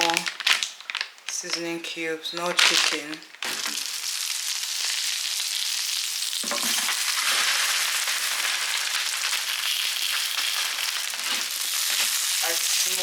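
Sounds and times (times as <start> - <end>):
food sizzling in a hot pan: 3.4 - 13.0.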